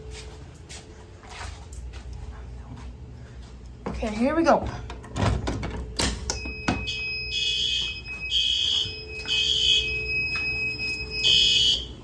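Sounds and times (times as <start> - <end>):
alarm clicks: 6.3 - 12.0
fire alarm sounder blasts: 6.3 - 12.0.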